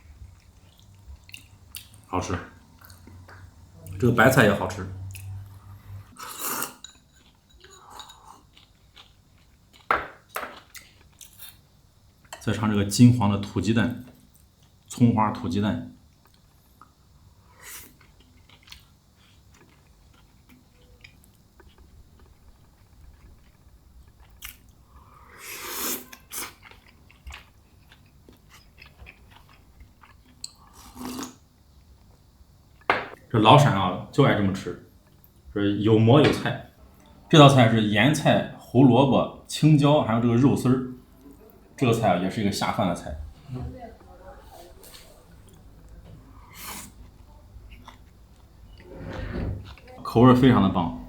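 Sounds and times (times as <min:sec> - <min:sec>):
person chewing food: 0:00.1 - 0:03.6, 0:05.1 - 0:12.3, 0:17.6 - 0:32.9, 0:44.7 - 0:48.8
person crunching food: 0:06.2 - 0:11.6, 0:25.6 - 0:31.4.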